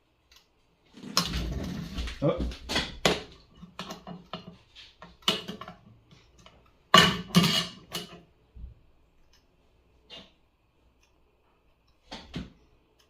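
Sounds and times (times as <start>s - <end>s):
objects clattering on hard surface: 0.9s - 8.3s.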